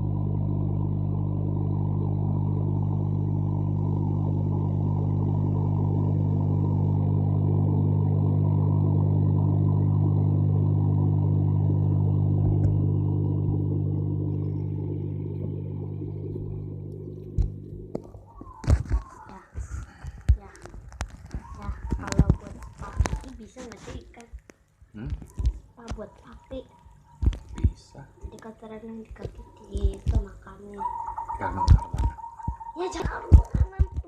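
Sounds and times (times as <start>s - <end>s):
low mechanical hum: 0.0s - 34.0s.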